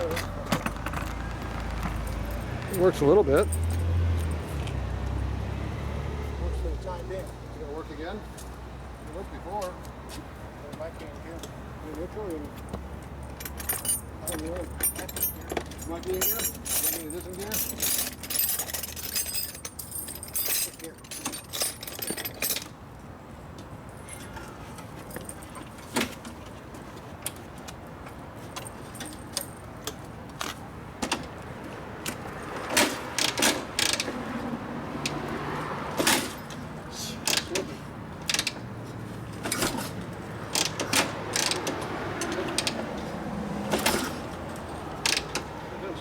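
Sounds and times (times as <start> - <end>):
metallic clicks and clanks: 32.0 - 34.2, 37.2 - 38.7, 39.3 - 43.1, 43.7 - 45.5.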